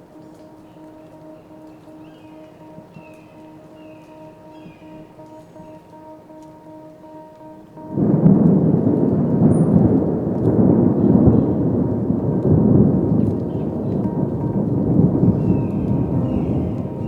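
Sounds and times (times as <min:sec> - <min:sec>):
heavy rain: 0:00.0 - 0:17.0
rolling thunder: 0:07.8 - 0:17.0.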